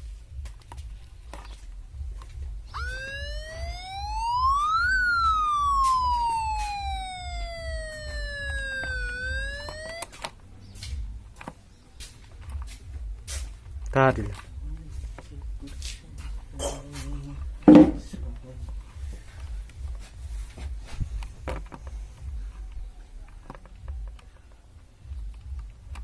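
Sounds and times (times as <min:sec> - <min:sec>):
low hum: 0:02.8 - 0:10.0
clicks: 0:02.8 - 0:10.1
siren wail: 0:02.8 - 0:10.1.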